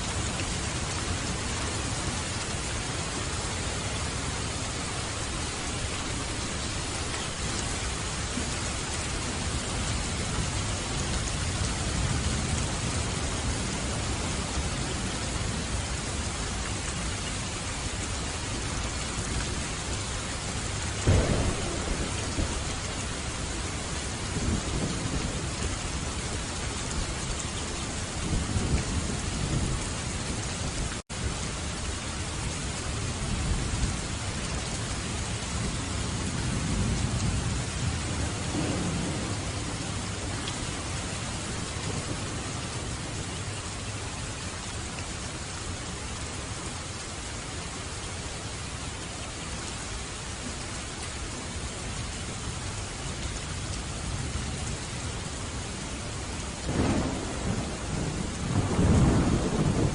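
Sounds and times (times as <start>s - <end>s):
heavy rain falling: 0.0s - 59.9s
sharp thunderclap: 21.0s - 23.3s, 38.5s - 40.1s, 56.7s - 59.9s
thunder rolling: 21.0s - 25.6s, 56.7s - 59.9s.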